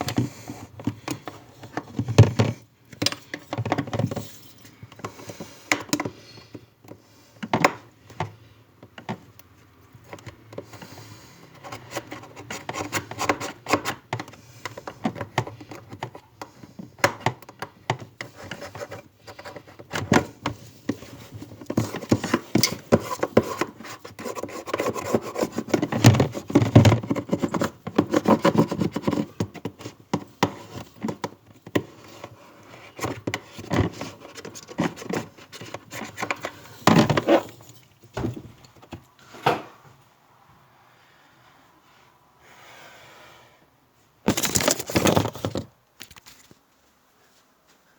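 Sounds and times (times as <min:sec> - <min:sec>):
parts and tools rubbing and scraping: 0:20.9 - 0:30.0, 0:31.9 - 0:37.9, 0:44.3 - 0:46.5.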